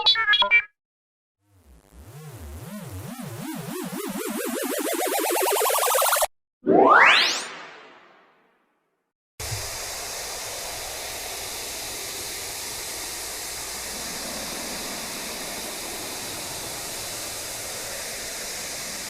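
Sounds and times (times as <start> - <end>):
steady hissing noise: 9.4 - 19.0.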